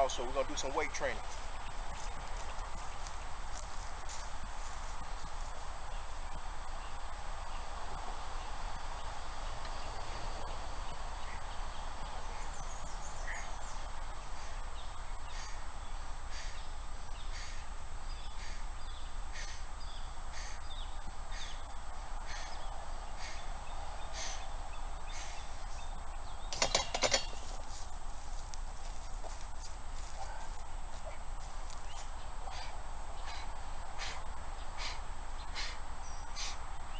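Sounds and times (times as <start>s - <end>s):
steady low hum: 0.0s - 36.9s
exercise weights knocking: 26.5s - 27.4s.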